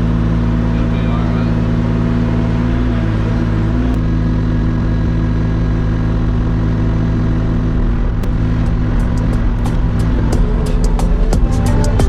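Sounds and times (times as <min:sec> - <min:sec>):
excavator engine running: 0:00.0 - 0:12.0.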